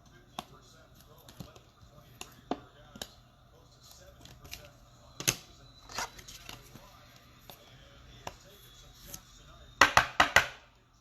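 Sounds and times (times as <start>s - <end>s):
steady low hum: 0.0s - 11.0s
cards tapping on a table: 9.8s - 10.6s.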